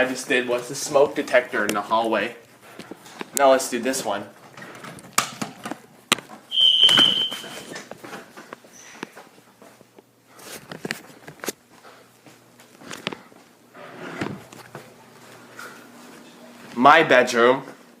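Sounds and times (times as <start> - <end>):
footsteps: 0.0 - 16.9
high-pitched fire alarm beep: 6.5 - 7.8.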